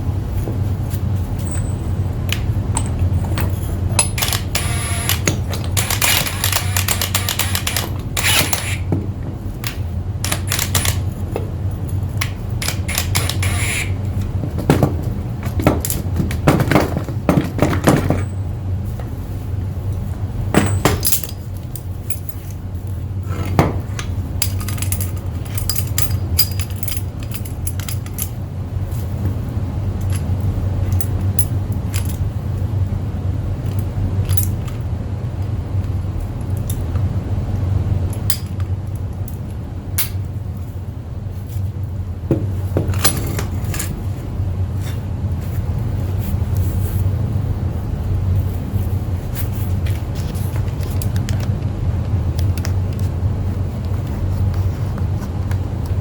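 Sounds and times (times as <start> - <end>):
metal tools clinking: 1.4 - 2.0, 2.7 - 8.8.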